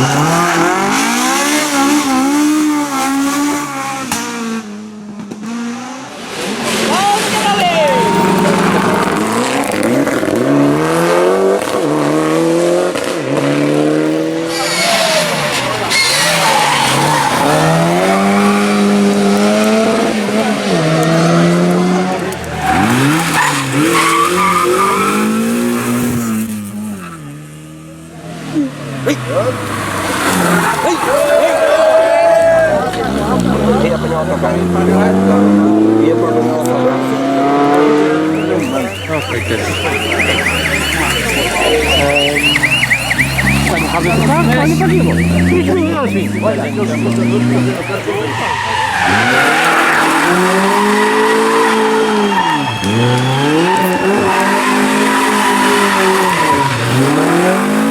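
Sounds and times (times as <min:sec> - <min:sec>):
car engine revving: 0:00.0 - 0:57.9
tyres skidding: 0:00.0 - 0:57.9
engine running: 0:36.3 - 0:56.2
electronic alarm siren warbling: 0:38.3 - 0:48.3.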